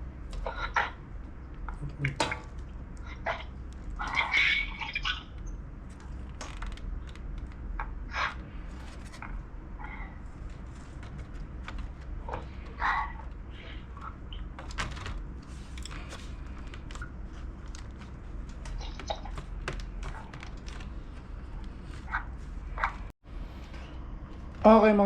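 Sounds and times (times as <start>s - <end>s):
steady low hum: 0.0s - 25.0s
plastic parts clicking and scraping: 5.8s - 23.1s.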